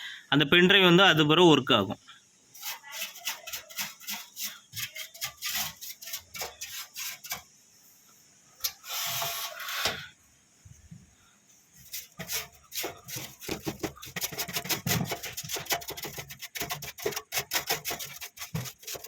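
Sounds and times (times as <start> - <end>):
small brush scrubbing: 2.5 - 7.6, 11.7 - 19.0.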